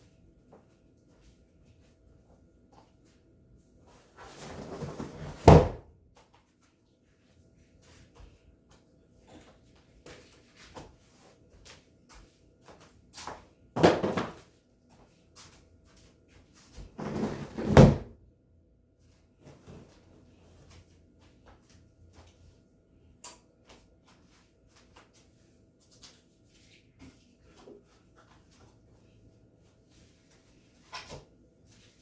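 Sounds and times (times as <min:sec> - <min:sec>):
objects scraping and thudding: 0:16.8 - 0:18.1.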